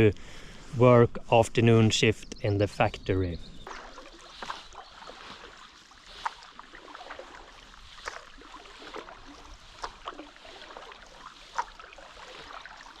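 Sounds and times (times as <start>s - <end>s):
moving water: 2.3s - 13.0s
paddle splashing in water: 3.6s - 13.0s.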